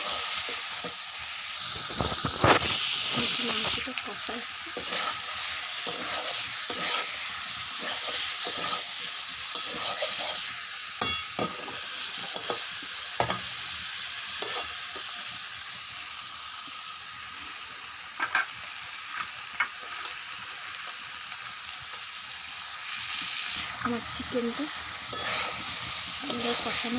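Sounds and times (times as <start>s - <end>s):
chicken sizzling in oil: 0.0s - 26.9s
spatula scraping a pan: 4.8s - 13.5s, 14.4s - 15.1s, 25.0s - 26.9s.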